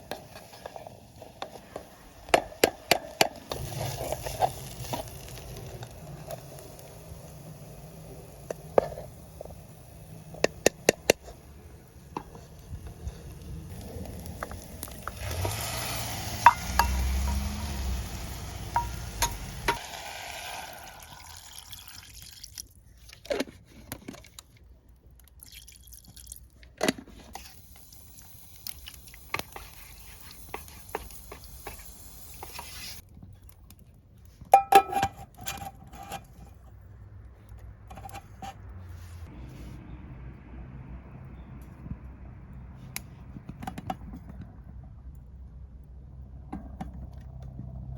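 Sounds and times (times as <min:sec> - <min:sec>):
cookware clinking: 0:16.3 - 0:17.8, 0:18.7 - 0:20.0, 0:34.6 - 0:35.2.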